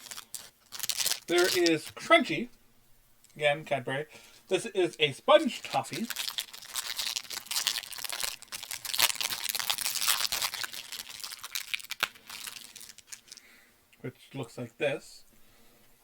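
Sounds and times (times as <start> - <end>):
plastic wrapper crinkling: 0.0 - 2.4, 4.9 - 13.6.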